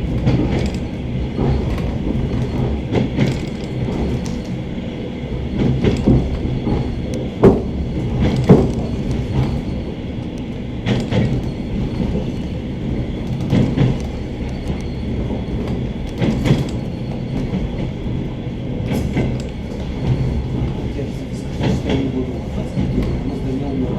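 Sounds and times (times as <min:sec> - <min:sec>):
train carriage rumbling: 0:00.0 - 0:23.9
wheels knocking over rail joints: 0:05.4 - 0:20.3.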